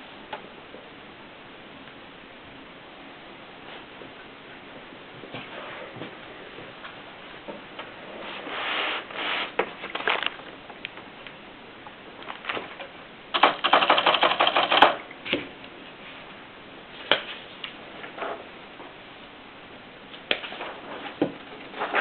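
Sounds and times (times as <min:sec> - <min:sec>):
sharp typewriter click: 0:13.3 - 0:15.0
typewriter keystrokes: 0:13.4 - 0:15.0.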